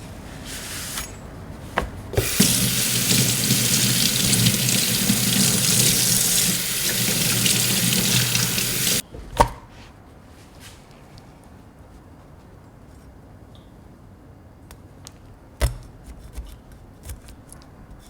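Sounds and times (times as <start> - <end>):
tap water running into sink: 2.2 - 9.0.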